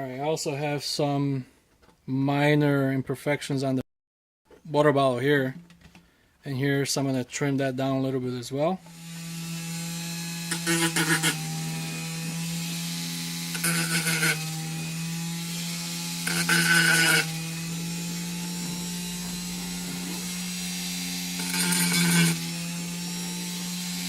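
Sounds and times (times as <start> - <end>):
rotary tool grinding plastic: 8.8 - 24.0.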